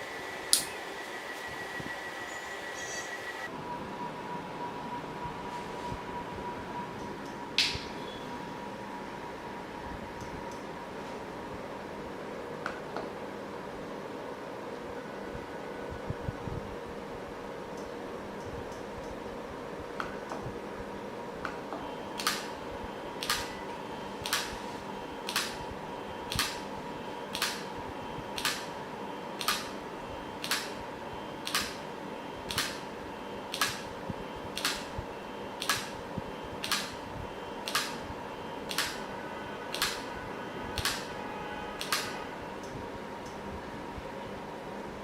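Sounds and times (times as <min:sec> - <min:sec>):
faint steady hum: 0:00.0 - 0:45.0
limit switch clicking: 0:21.4 - 0:22.6, 0:23.2 - 0:23.6, 0:24.2 - 0:24.6, 0:25.2 - 0:25.7, 0:26.3 - 0:26.7, 0:27.3 - 0:27.7, 0:28.4 - 0:28.7, 0:29.4 - 0:29.8, 0:30.4 - 0:30.8, 0:31.4 - 0:31.8, 0:32.5 - 0:32.9, 0:33.5 - 0:35.0, 0:35.6 - 0:36.0, 0:36.6 - 0:37.0, 0:37.6 - 0:38.1, 0:38.7 - 0:39.0, 0:39.7 - 0:40.1, 0:40.8 - 0:41.1, 0:41.8 - 0:43.4.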